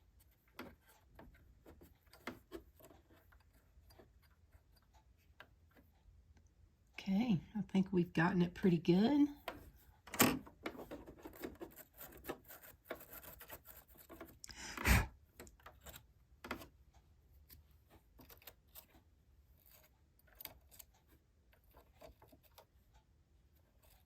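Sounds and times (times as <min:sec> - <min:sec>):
light clicks and rubbing of tools: 0:15.4 - 0:24.0.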